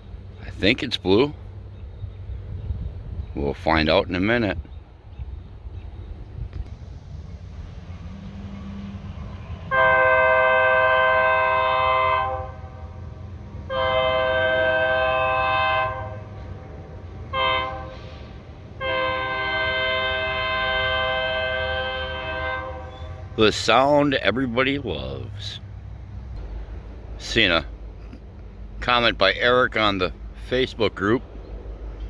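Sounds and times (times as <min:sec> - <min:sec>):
low diesel engine rumble: 0:00.0 - 0:32.0
locomotive air horn blasts: 0:08.0 - 0:24.1.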